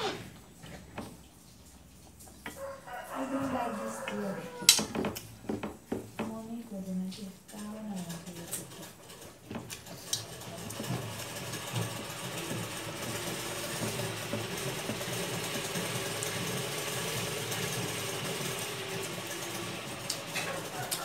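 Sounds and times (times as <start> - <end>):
machine humming: 10.6 - 21.0.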